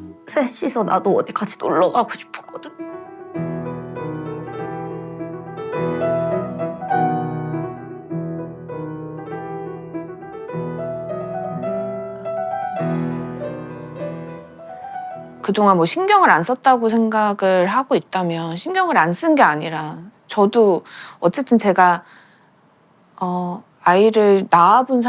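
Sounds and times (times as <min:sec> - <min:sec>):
soft piano music: 0:00.0 - 0:19.6.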